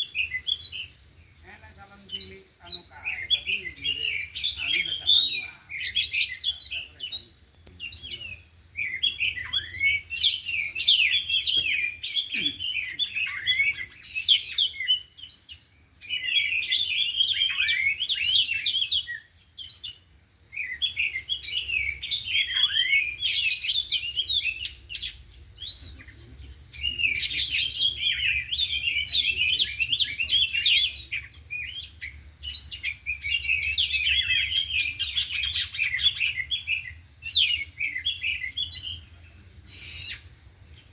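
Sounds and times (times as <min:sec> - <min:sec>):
birds singing chirps and whistles: 0:00.0 - 0:40.9.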